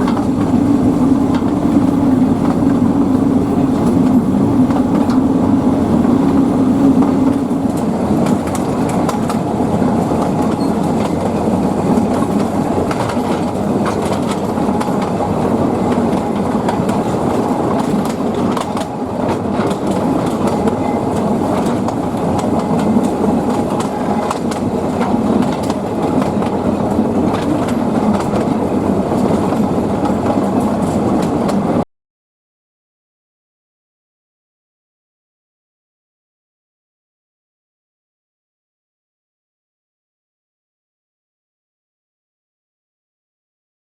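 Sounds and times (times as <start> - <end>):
train wheels clattering over rails: 0.0 - 31.8.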